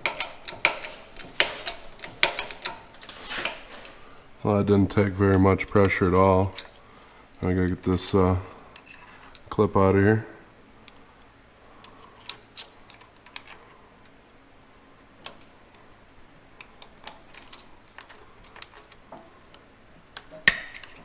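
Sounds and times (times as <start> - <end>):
screwdriver clicking and scraping metal: 0.0 - 3.6, 5.6 - 6.8.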